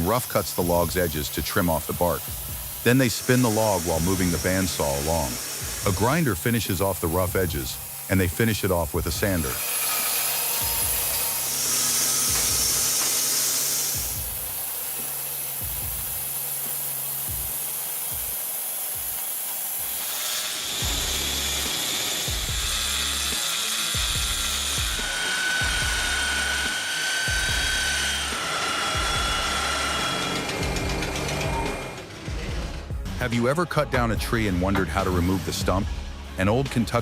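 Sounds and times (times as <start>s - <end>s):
background music with bass beat: 0.0s - 3.2s, 3.9s - 9.6s, 13.9s - 18.4s, 20.8s - 23.4s, 24.0s - 28.4s, 29.0s - 30.0s, 30.6s - 37.0s
power tool working wood: 0.0s - 33.0s.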